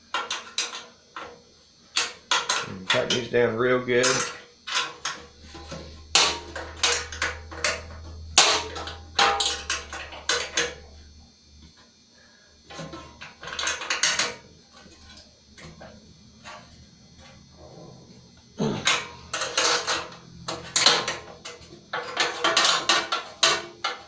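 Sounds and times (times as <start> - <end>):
low hum: 4.2 - 14.0.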